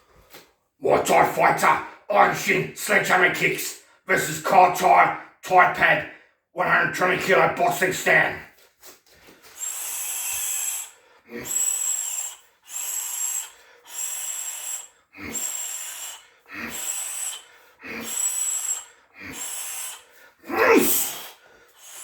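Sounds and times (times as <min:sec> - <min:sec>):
hissing exhale: 0:09.6 - 0:22.0.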